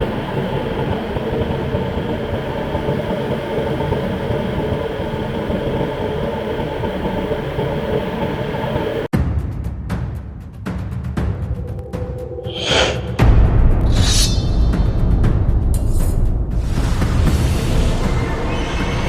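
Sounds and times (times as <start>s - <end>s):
boat engine droning: 0.0s - 9.1s.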